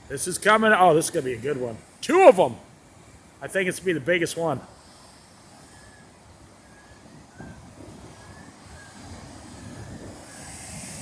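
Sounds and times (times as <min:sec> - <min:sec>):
ocean waves rumbling: 0:00.1 - 0:05.6.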